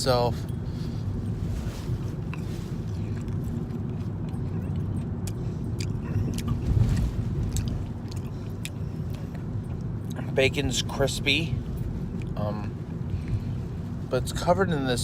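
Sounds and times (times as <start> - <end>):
low rumble: 0.0 - 14.2
person chewing crispy bacon: 2.1 - 10.3.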